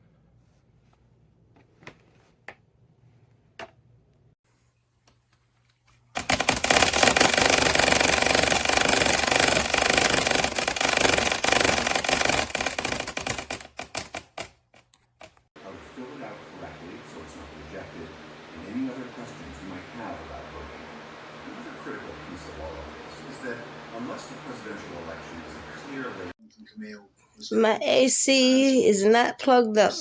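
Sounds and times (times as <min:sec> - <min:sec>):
fan blades clattering: 0:15.9 - 0:26.3.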